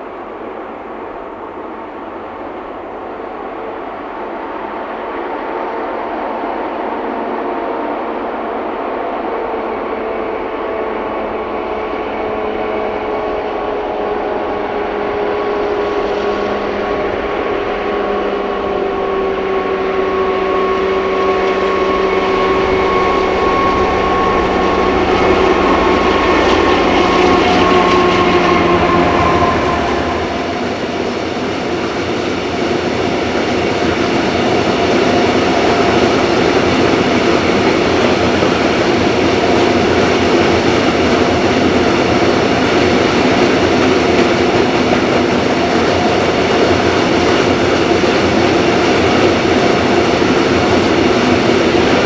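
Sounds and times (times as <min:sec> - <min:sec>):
diesel locomotive engine: 0:00.0 - 0:52.0
rumble of heavy wagons: 0:11.2 - 0:32.4.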